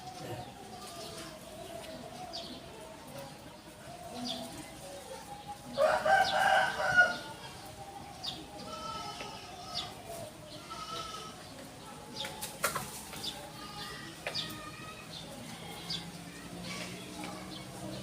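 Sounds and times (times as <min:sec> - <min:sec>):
rooster crowing: 0:05.8 - 0:07.3.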